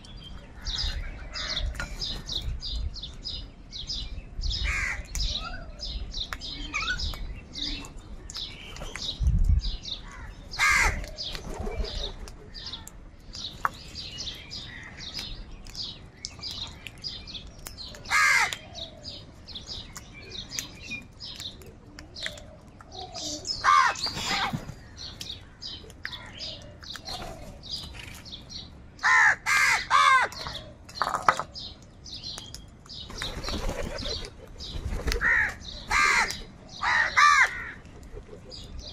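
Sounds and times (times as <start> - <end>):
crows cawing: 4.6 - 5.1, 10.0 - 11.0, 18.1 - 18.6, 23.6 - 24.5, 29.0 - 30.5, 35.2 - 37.8.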